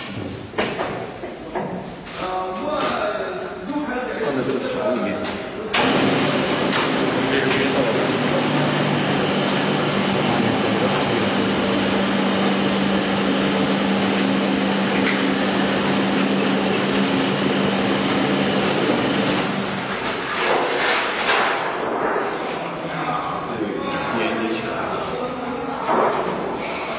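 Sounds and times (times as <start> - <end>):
machine rumble and hum: 5.8 - 20.1.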